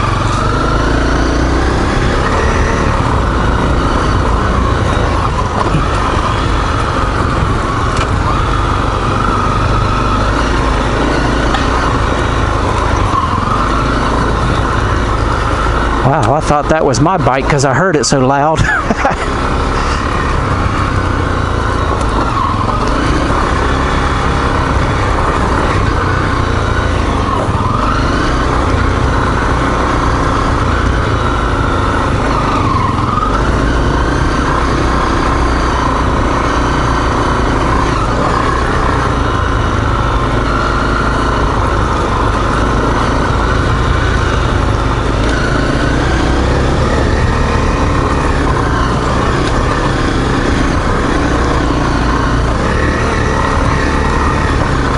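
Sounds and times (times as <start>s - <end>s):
motorcycle engine running: 0.0s - 54.9s.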